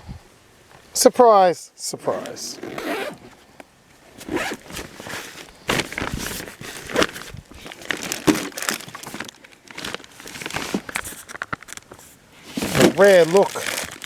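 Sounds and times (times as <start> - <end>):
rustling of packaging: 4.1 - 14.0.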